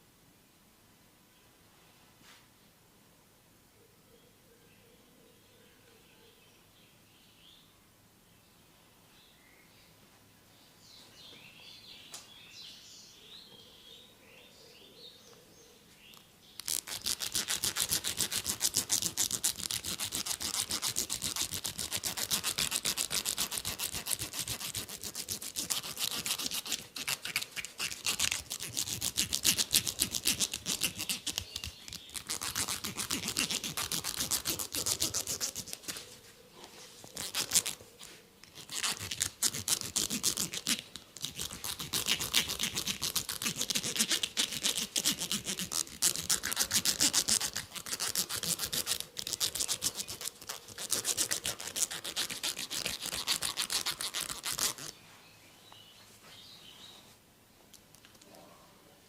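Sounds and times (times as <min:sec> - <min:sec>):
scratching hair and scalp: 0:16.6 - 0:55.0.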